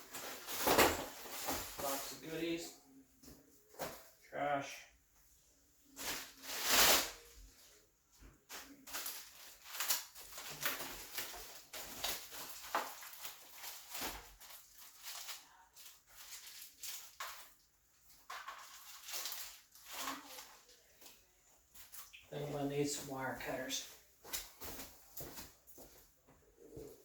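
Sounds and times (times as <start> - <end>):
packaging rustling and crinkling: 0.0 - 2.3, 6.0 - 7.4, 8.5 - 22.2.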